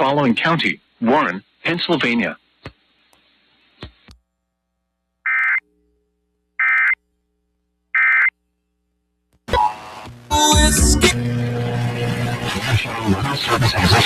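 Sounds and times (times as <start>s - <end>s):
radio music: 9.5s - 14.0s.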